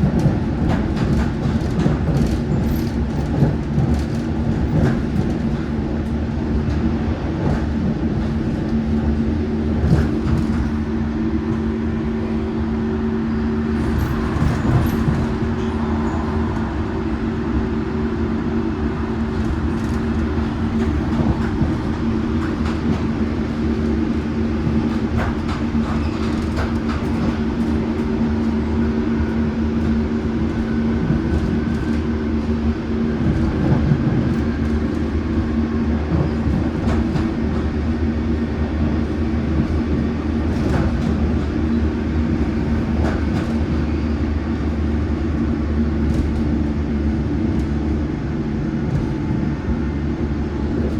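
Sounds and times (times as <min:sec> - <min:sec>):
train running at speed: 0:00.0 - 0:50.9
track clicks and knocks: 0:13.7 - 0:38.4.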